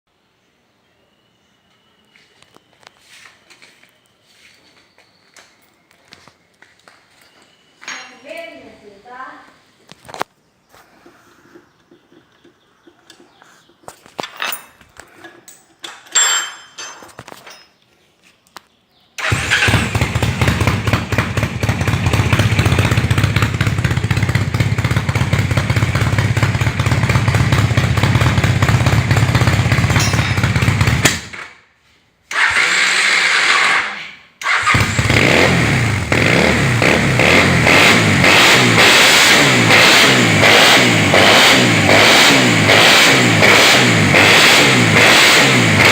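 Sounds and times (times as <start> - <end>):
motorcycle engine running: 19.2 - 31.3, 34.5 - 45.9.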